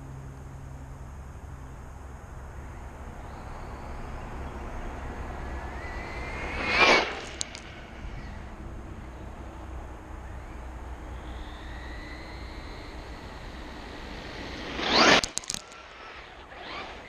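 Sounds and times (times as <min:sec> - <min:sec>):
rc car motor whine: 0:00.0 - 0:17.0
rc car whooshing past: 0:02.6 - 0:17.0
sharp crackles: 0:06.4 - 0:07.9, 0:14.2 - 0:16.8.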